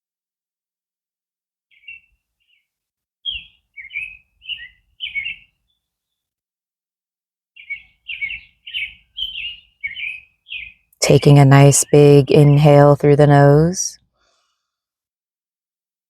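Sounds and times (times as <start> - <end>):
songbird chirping: 1.7 - 6.2, 7.6 - 14.0.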